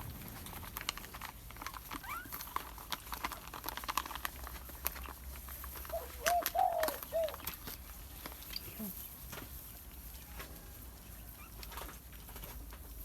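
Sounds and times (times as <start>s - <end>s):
puppies scrabbling: 0.0s - 8.4s
puppy cooing: 1.9s - 2.6s, 5.8s - 7.5s
puppy squeak: 2.0s - 2.5s.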